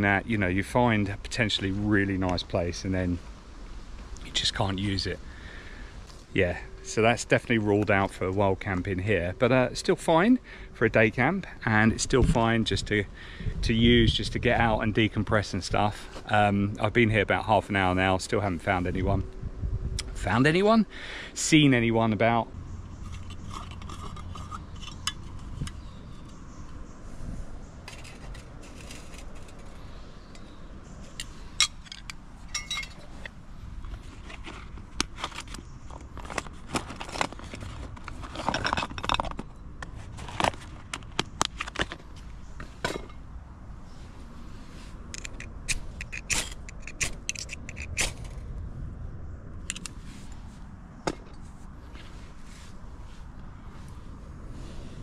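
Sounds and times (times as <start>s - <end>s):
low steady background noise: 0.0s - 55.0s
handling scrapes and clinks: 22.9s - 26.9s, 27.8s - 43.3s, 44.6s - 48.4s.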